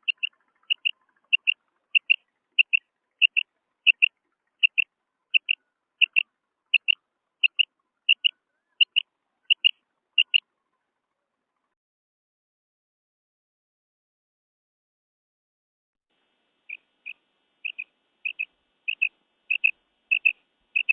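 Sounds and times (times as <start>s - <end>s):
quail two-note calls: 0.0s - 10.4s, 16.7s - 20.9s.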